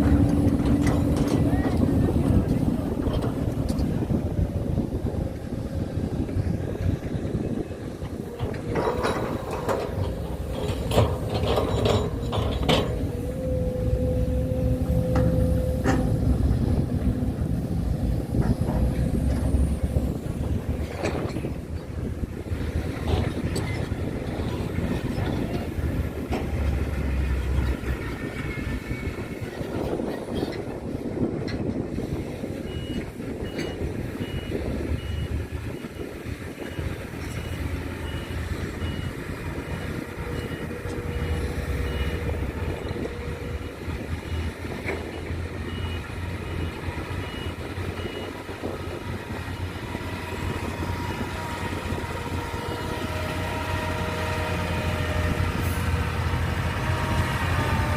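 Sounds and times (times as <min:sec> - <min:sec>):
heavy vehicle engine rumbling: 0:00.0 - 0:57.9
reversing alarm beeping: 0:40.2 - 0:48.4.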